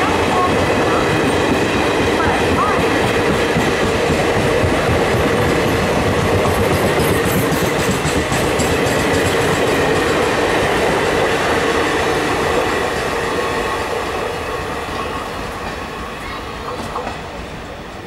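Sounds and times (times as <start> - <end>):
train wheels clattering over rail joints: 1.3 - 11.3.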